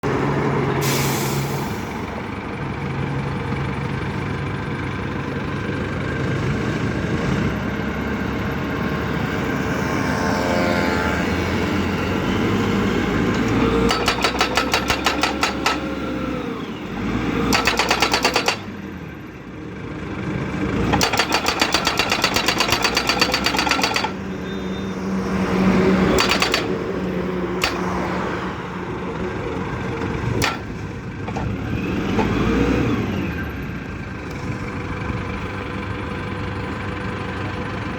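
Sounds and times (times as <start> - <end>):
pile driver engine running: 0.0 - 37.9
hammer striking rapid blows: 13.9 - 15.9, 17.5 - 18.7, 20.9 - 24.2, 26.2 - 26.8, 27.6 - 27.9.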